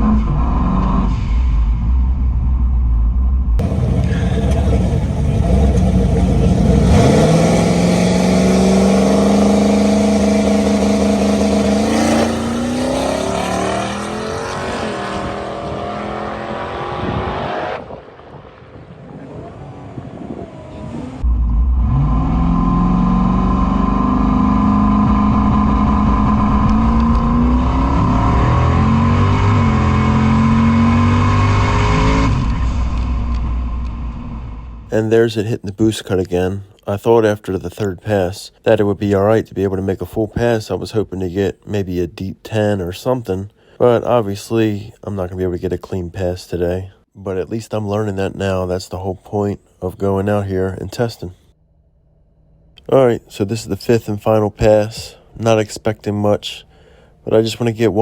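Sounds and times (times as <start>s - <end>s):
car engine launching and accelerating: 0.0s - 34.9s
engine choppy boost cut: 3.6s - 17.9s.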